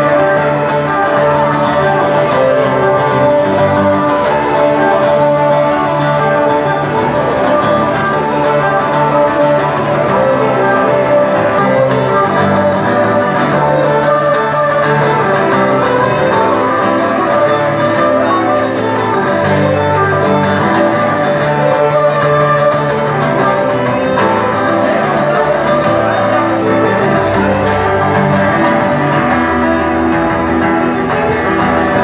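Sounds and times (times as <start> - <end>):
folk band playing instrumental: 0.0 - 32.0.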